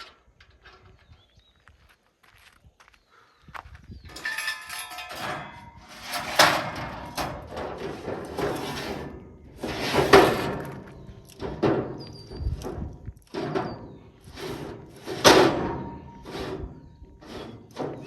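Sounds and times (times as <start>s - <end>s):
clattering knocks and scrapes: 4.1s - 18.0s.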